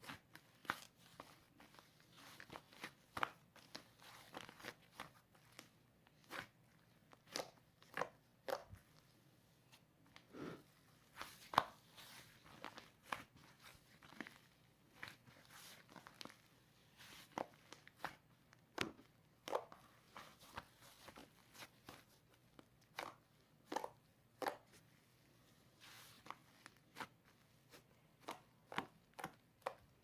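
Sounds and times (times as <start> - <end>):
slime crackling and squishing: 0.0 - 9.0.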